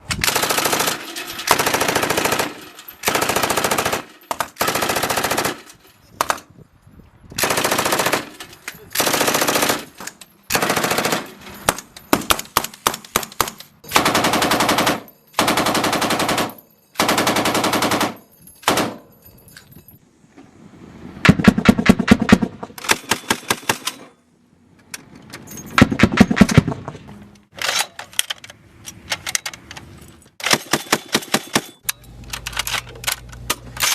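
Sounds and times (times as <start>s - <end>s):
automatic gunfire bursts: 7.4s - 8.3s, 9.0s - 9.9s, 10.5s - 11.3s, 14.0s - 19.0s.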